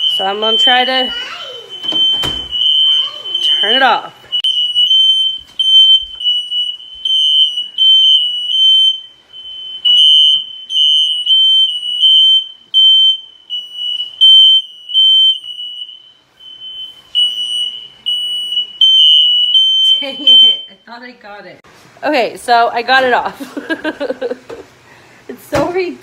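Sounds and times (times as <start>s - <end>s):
smoke alarm beeping: 0.0s - 21.1s.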